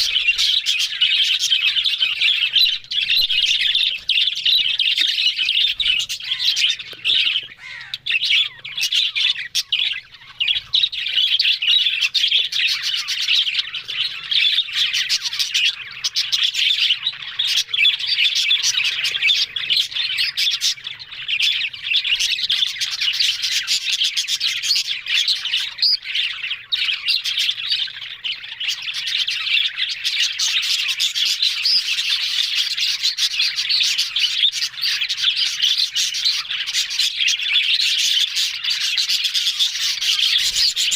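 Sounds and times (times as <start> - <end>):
budgerigars chirping: 0.0 - 40.9.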